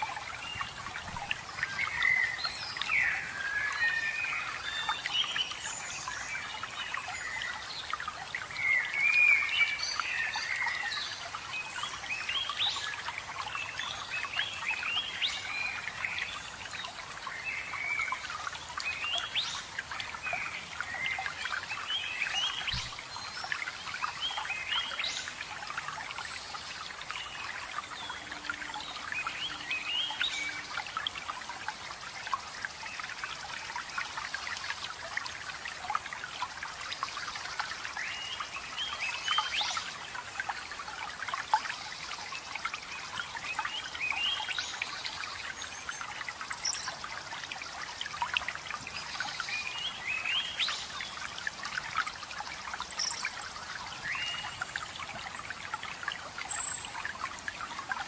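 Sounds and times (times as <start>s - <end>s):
forest birds singing and chirping: 0.0s - 31.4s, 52.8s - 55.2s
running water rushing: 0.0s - 58.0s.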